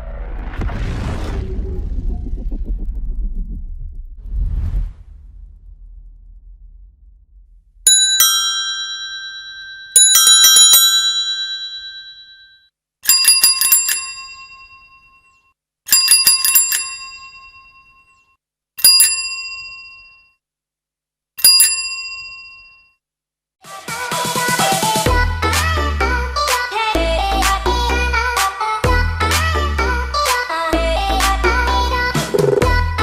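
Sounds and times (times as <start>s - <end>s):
bicycle bell ringing: 7.9s - 20.4s, 21.4s - 23.0s.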